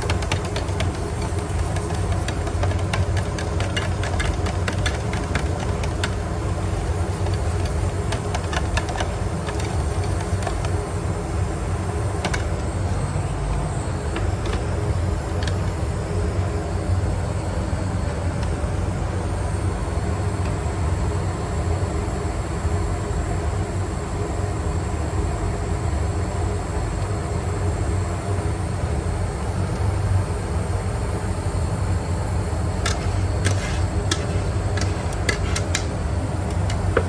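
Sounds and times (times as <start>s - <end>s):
motor humming: 0.0s - 19.7s, 31.7s - 37.0s.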